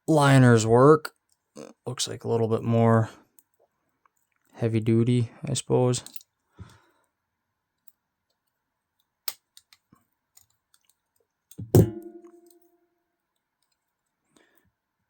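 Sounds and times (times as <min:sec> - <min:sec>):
small metal clicks and ticks: 0:07.8 - 0:11.6, 0:13.3 - 0:14.1
metal part ringing on hard surface: 0:11.8 - 0:12.6.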